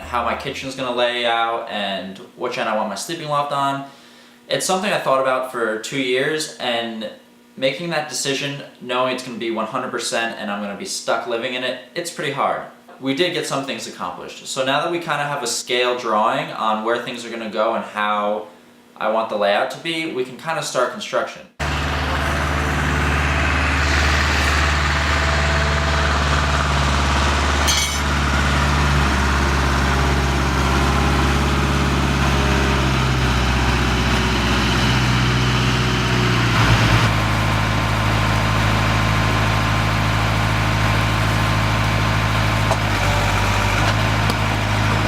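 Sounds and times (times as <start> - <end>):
engine idling: 21.6 - 45.0.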